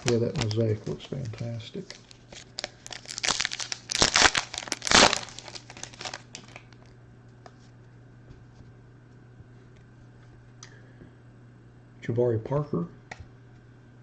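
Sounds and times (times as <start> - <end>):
wrapper tearing and crinkling: 0.0 - 6.9.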